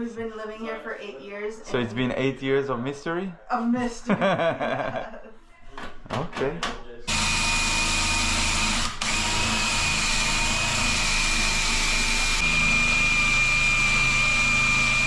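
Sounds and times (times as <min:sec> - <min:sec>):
electric drill whining: 0:07.1 - 0:15.0.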